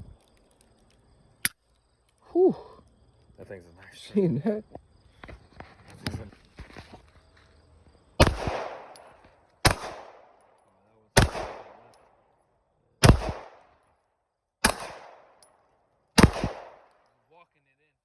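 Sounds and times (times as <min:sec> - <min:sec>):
handgun shots: 0:08.2 - 0:10.4, 0:11.2 - 0:12.0, 0:13.0 - 0:13.7, 0:14.6 - 0:15.6, 0:16.2 - 0:17.0.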